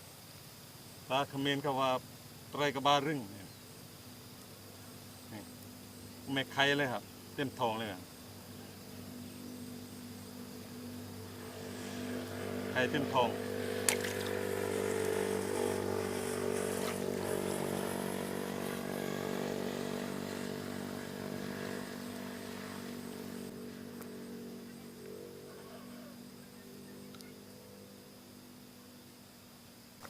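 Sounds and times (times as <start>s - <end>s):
small engine running: 5.3s - 28.2s.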